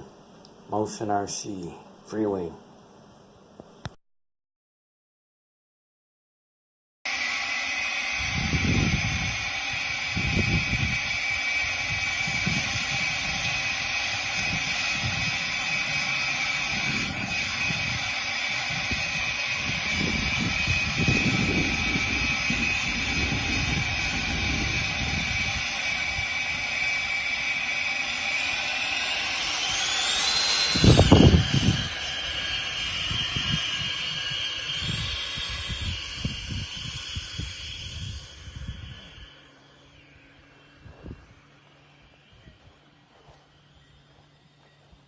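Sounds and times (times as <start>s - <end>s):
electric ducted fans whining: 0.0s - 3.9s, 7.1s - 45.0s
wind on microphone: 8.1s - 39.5s, 40.7s - 43.4s.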